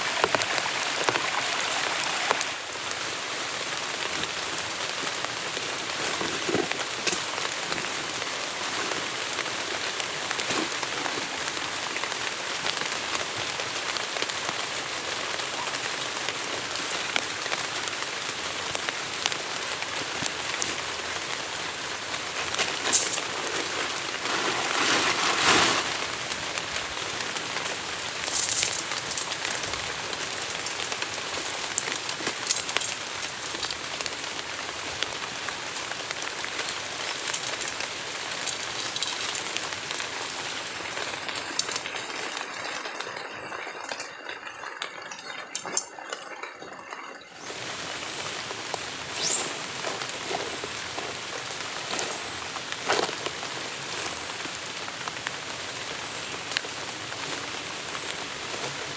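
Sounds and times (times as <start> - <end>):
heavy rain falling: 0.0 - 58.9
sharp raindrop ticks: 26.1 - 55.4.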